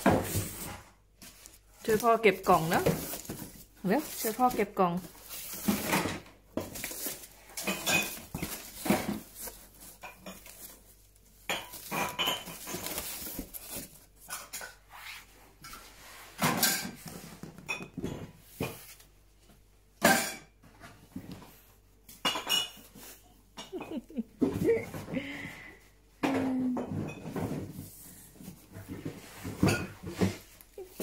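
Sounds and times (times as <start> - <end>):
objects knocking and rattling: 0.0 - 14.8, 16.4 - 19.0, 26.2 - 31.0.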